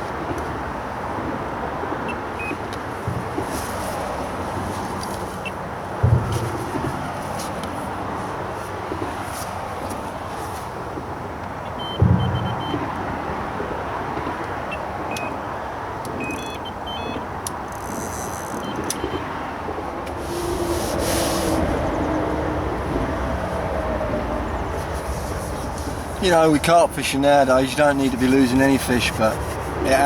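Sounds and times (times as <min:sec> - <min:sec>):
road traffic noise: 0:00.0 - 0:30.0
low thump: 0:06.0 - 0:07.0
short high beeps: 0:11.8 - 0:12.8, 0:16.2 - 0:17.2.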